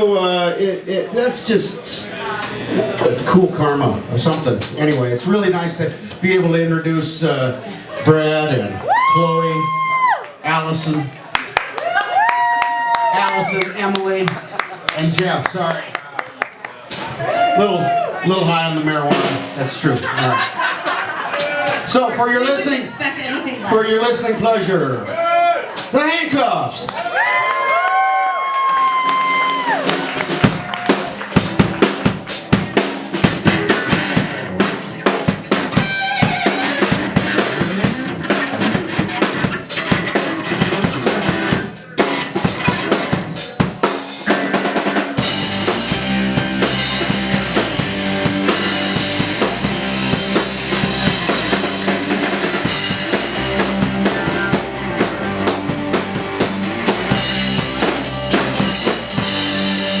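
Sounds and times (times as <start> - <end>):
drum kit playing a beat: 3.6 - 5.1, 16.8 - 17.6, 18.7 - 22.0, 25.7 - 28.0, 28.9 - 60.0
bass guitar: 16.9 - 20.4, 29.6 - 60.0
sustained guitar or keyboard: 30.4 - 60.0.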